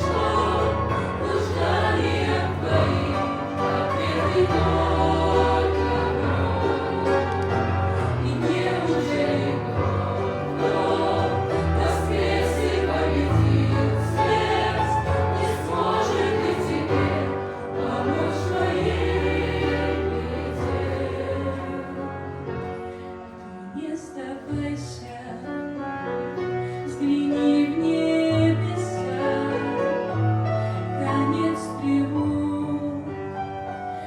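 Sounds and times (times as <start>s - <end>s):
instrumental accompaniment: 0.0s - 22.0s
choir singing: 0.0s - 22.4s, 27.0s - 30.1s, 31.0s - 34.0s.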